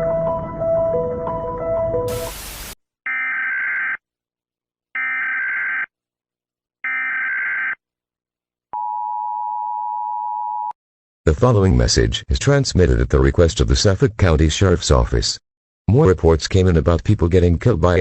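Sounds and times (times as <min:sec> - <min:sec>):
burst of static: 0:02.1 - 0:02.8.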